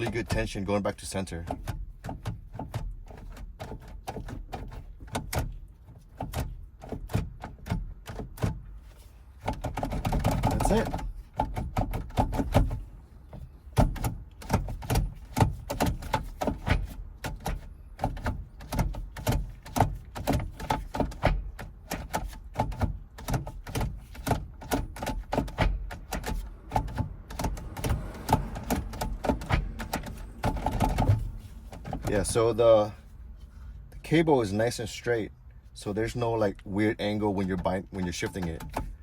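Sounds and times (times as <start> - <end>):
gear shifter clicks and clunks: 0.0 - 39.0.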